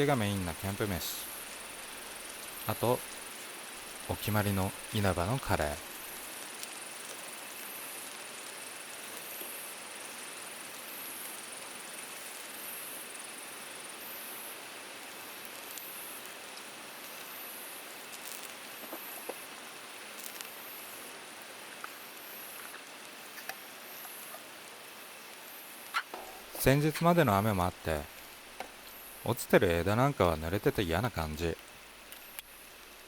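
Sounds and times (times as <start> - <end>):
insects chirping: 0.0 - 33.0
small clicks: 32.1 - 32.5.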